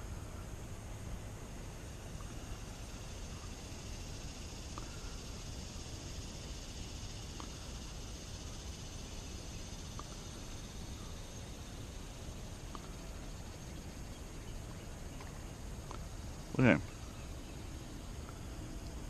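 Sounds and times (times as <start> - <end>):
faint high hiss: 0.0 - 19.0.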